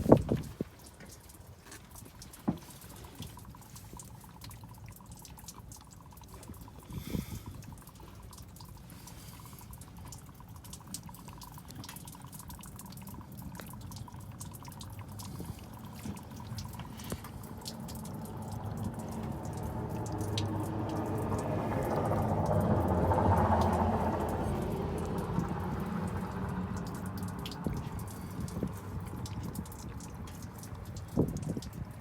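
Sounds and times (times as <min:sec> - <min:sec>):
liquid dripping: 0:00.0 - 0:32.0.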